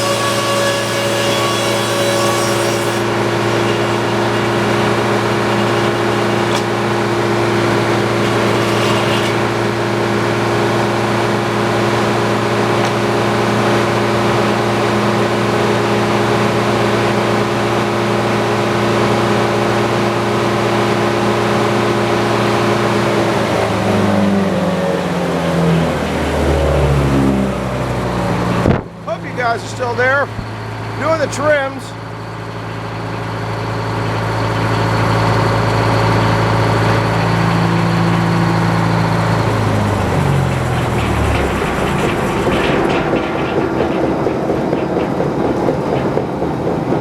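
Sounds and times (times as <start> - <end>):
sawmill running: 0.0 - 47.0.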